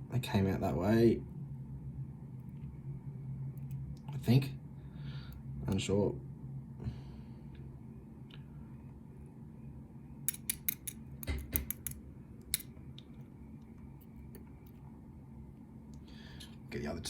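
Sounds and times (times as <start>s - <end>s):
metallic clicks of lock pins: 10.3s - 13.1s.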